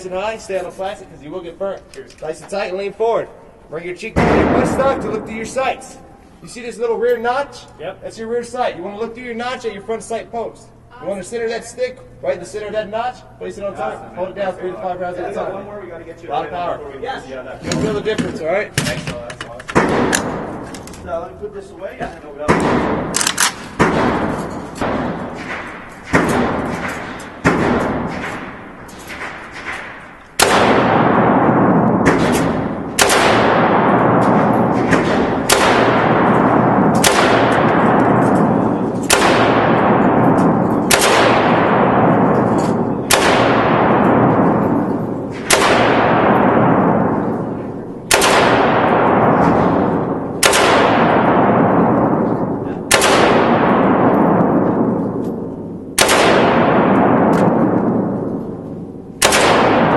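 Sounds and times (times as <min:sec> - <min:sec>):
rifle shots with ringing echo: 0:04.2 - 0:05.6, 0:19.7 - 0:21.0, 0:22.4 - 0:59.9.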